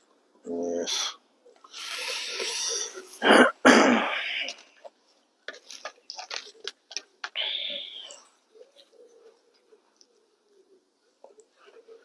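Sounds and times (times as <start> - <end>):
man coughing: 3.2 - 4.2.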